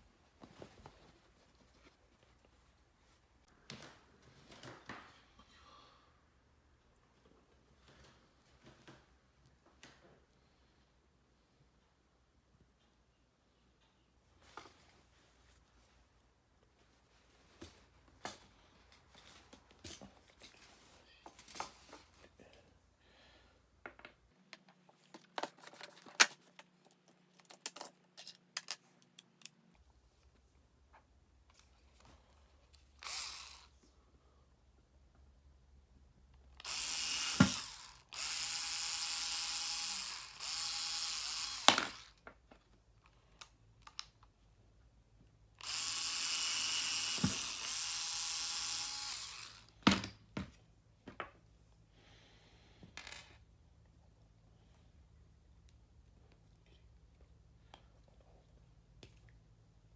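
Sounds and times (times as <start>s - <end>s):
small electric power tool running: 33.0s - 33.7s, 36.6s - 42.2s, 45.6s - 49.8s.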